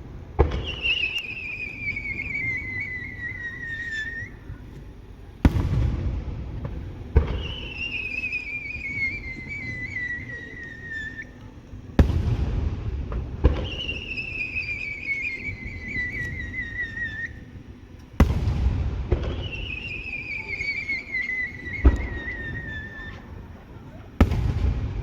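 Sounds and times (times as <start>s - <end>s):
fireworks warbling whistles: 0.0s - 4.8s, 5.4s - 25.0s
firework shells bursting: 5.4s - 11.1s, 12.0s - 17.2s.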